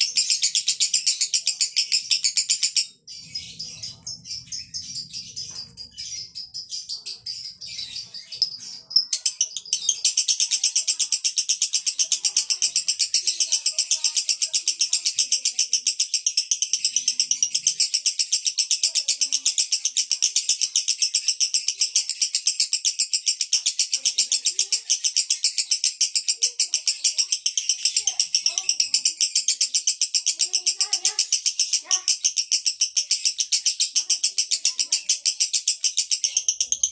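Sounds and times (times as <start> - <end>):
lovebird shrill rattling chatter: 0.0 - 36.9.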